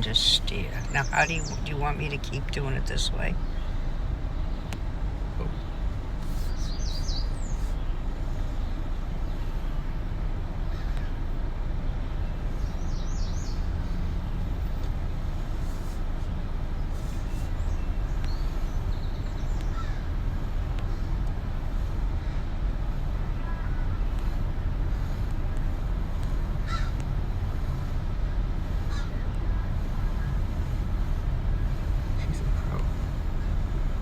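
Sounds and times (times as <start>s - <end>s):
tyres and road noise: 0.0s - 34.0s
bird chirping: 6.4s - 7.9s, 12.6s - 13.7s.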